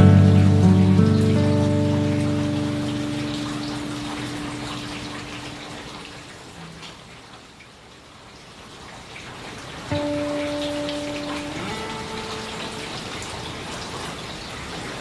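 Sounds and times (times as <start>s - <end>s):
rain pattering: 0.0s - 15.0s
soft held musical tone: 9.9s - 13.6s.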